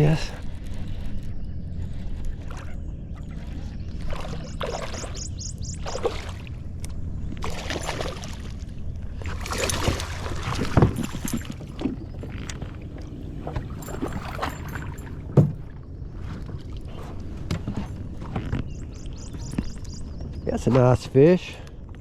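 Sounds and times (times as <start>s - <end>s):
steady low hum: 0.0s - 22.0s
water splashing: 2.4s - 18.4s.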